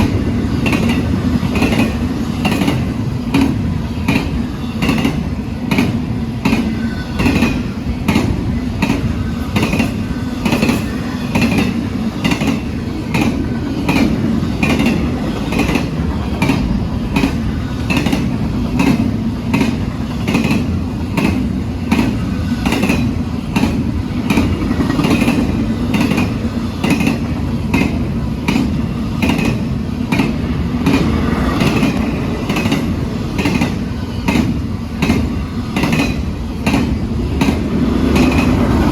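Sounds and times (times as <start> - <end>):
freight train rumbling: 0.0 - 38.9
wheels clacking over rail joints: 0.0 - 38.9.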